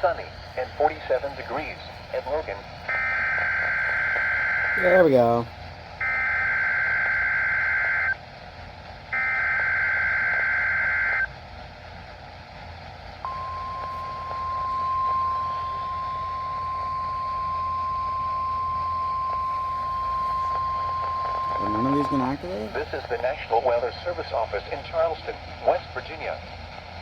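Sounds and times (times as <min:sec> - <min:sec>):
faint radio hiss: 0:00.0 - 0:05.5, 0:13.3 - 0:26.5
steady warning alarm tone: 0:00.4 - 0:08.2, 0:09.1 - 0:11.4, 0:13.2 - 0:23.2
screeching digital data bursts: 0:19.0 - 0:22.8.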